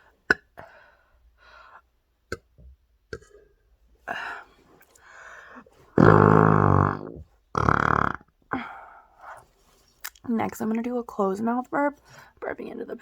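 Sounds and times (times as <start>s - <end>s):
breaths: 0.0s - 1.9s, 4.0s - 6.0s, 8.5s - 9.8s, 12.0s - 12.4s
woman burping into pillow: 6.0s - 8.6s.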